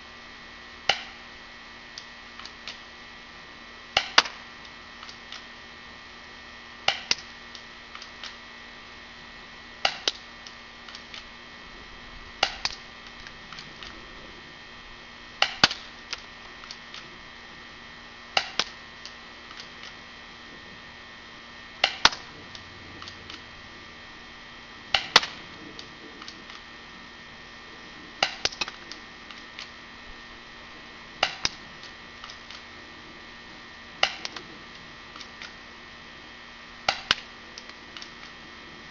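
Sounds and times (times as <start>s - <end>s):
airsoft pistol shots: 24.9s - 25.5s.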